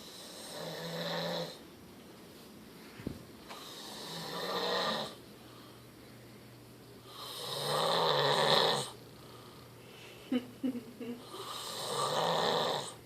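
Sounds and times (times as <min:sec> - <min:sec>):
man snoring: 0:00.0 - 0:01.6, 0:03.6 - 0:05.2, 0:07.1 - 0:09.0, 0:11.2 - 0:13.0.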